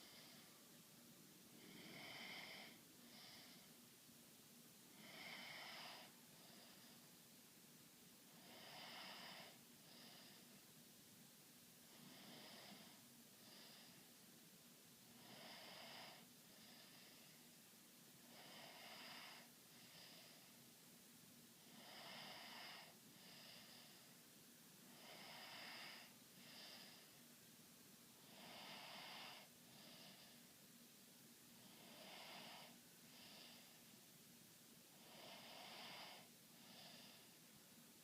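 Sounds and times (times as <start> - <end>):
faint snoring: 0.0 - 0.7, 1.5 - 3.8, 4.9 - 7.1, 8.3 - 10.6, 11.9 - 14.2, 15.1 - 17.6, 18.2 - 20.6, 21.6 - 24.2, 24.8 - 27.2, 28.2 - 30.5, 31.6 - 34.0, 34.9 - 37.4.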